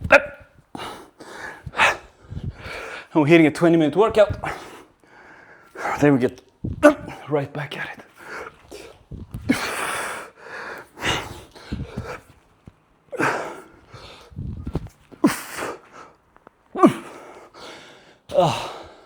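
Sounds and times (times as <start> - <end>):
man grunting: 0.0 - 0.5, 6.8 - 7.3, 16.8 - 17.2, 18.3 - 18.8.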